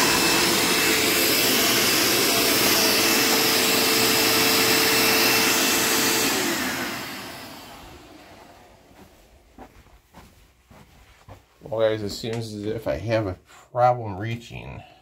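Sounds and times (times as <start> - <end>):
vacuum motor winding down: 0.0 - 8.9
vacuum cleaner running: 0.0 - 9.4.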